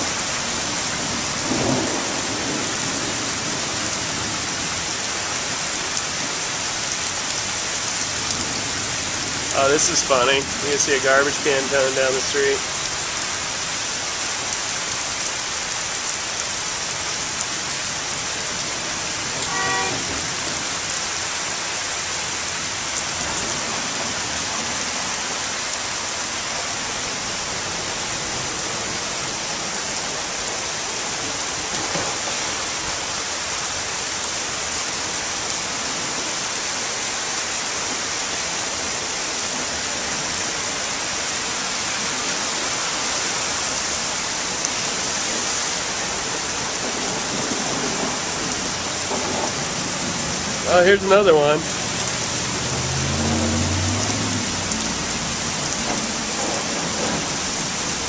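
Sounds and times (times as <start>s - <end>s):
flood water rushing: 0.0s - 58.0s
heavy rain: 0.0s - 58.0s
car horn toot: 19.4s - 20.1s.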